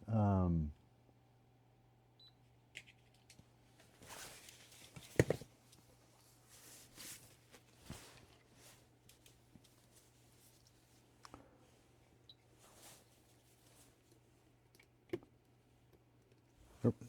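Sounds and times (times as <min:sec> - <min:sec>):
handling noises on a workbench: 0:02.8 - 0:10.8.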